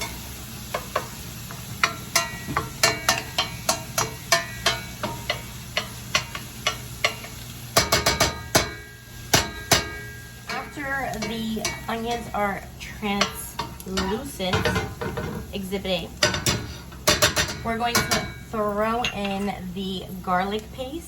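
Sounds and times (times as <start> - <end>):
onions frying in oil: 0.0 - 21.0
utensil knocking against pan: 0.7 - 12.3, 13.1 - 15.5, 16.2 - 18.4.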